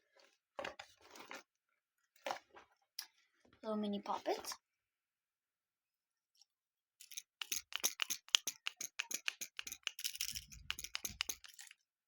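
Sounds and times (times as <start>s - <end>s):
plastic fidget toy clicking: 7.0s - 11.8s.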